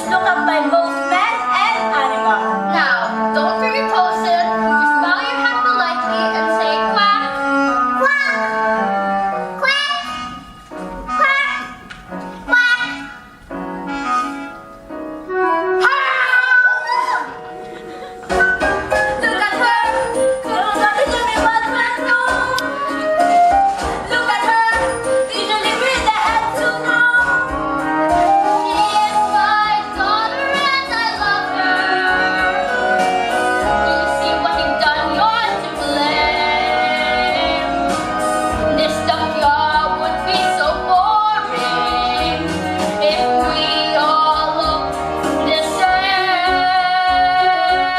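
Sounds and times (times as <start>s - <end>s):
instrumental accompaniment: 0.0s - 47.9s
women singing: 19.2s - 22.7s, 24.0s - 27.5s, 28.6s - 47.9s.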